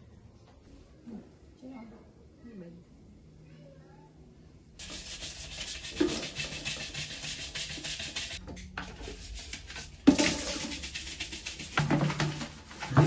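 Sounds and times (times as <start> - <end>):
scrubbing strokes: 4.8 - 13.0.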